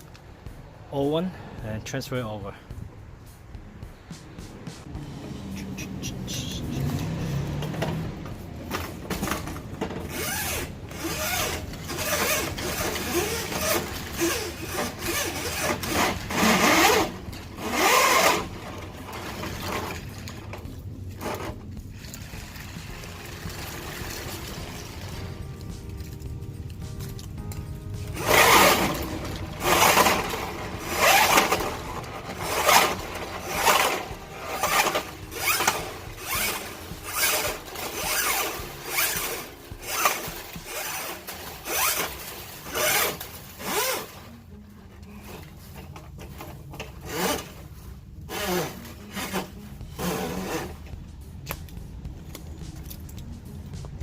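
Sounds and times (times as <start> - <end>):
steel cable scraping against drum: 8.6 - 25.9, 27.4 - 44.5, 45.1 - 51.0.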